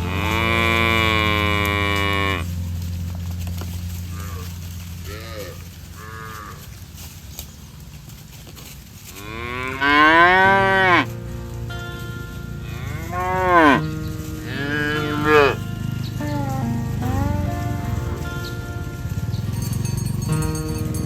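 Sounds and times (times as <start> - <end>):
cows mooing: 0.0 - 2.6, 4.1 - 6.8, 9.2 - 11.3, 12.6 - 21.0.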